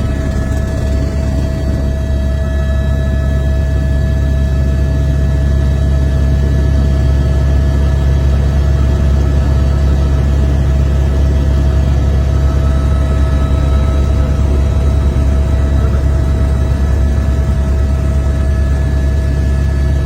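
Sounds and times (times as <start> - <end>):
helicopter engine and rotor drone: 0.0 - 20.0.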